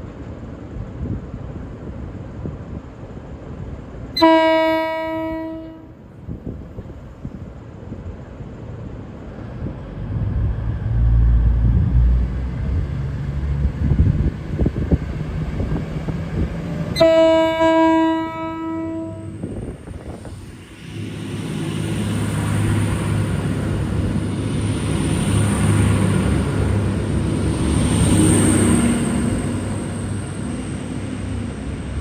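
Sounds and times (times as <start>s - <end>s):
train rumble: 0.0s - 32.0s
train horn low note: 4.2s - 6.0s, 16.9s - 19.7s.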